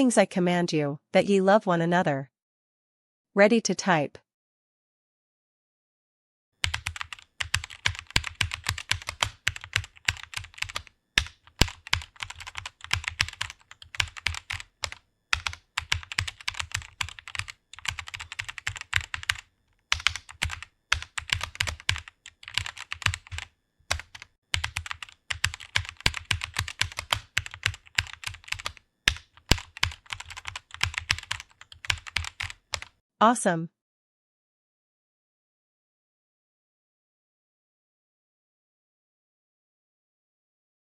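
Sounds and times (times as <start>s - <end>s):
typing on computer keyboard: 6.6s - 33.0s.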